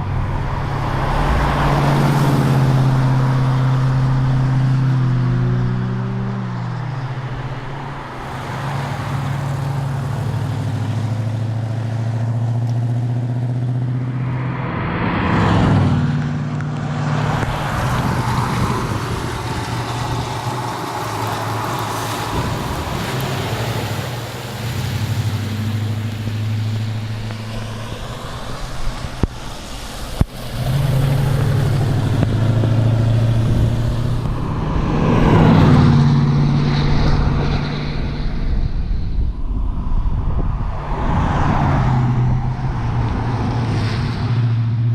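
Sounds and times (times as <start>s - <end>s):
road or wind noise: 0.0s - 44.9s
car engine running: 15.8s - 38.2s.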